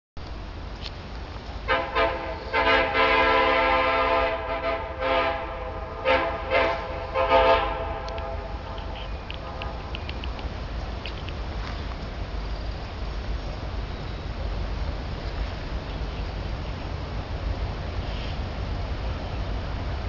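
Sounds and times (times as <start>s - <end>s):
locomotive air horn blasts: 1.7s - 9.9s.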